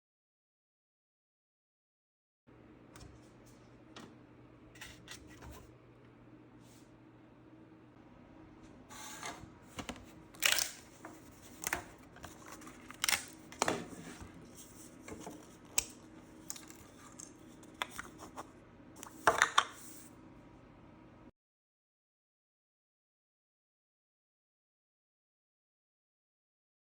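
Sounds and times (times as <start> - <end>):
faint steady hum: 2.5 - 21.3
plastic parts clicking and snapping: 9.8 - 10.8, 11.6 - 13.9.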